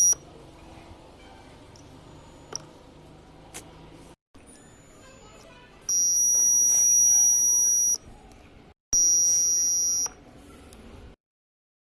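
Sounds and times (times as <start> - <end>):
alarm buzzer high-pitched tone: 5.9 - 8.0, 9.0 - 10.1.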